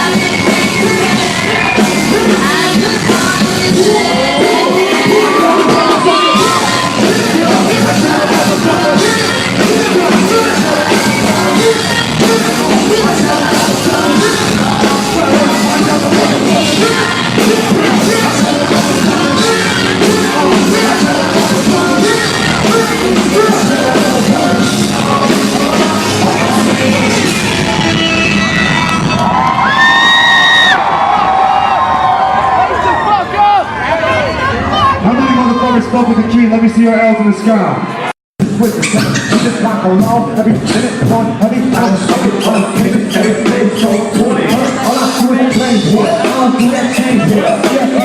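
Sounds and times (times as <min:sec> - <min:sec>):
vocals over beat: 0:00.0 - 0:28.5, 0:38.4 - 0:48.0
loud hip-hop music: 0:00.0 - 0:29.6, 0:38.4 - 0:48.0.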